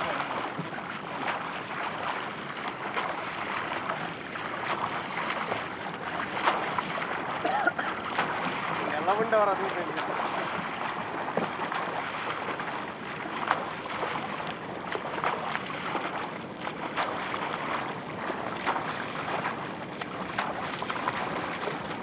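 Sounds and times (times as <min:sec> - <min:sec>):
small splashes or knocks: 0:00.0 - 0:14.2
moving water: 0:00.0 - 0:22.0.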